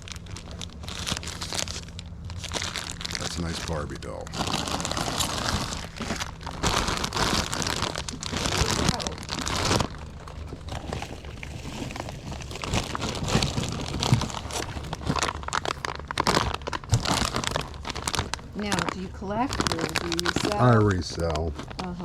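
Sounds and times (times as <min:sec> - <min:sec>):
rustling crinkling handling noise: 0:00.0 - 0:22.0.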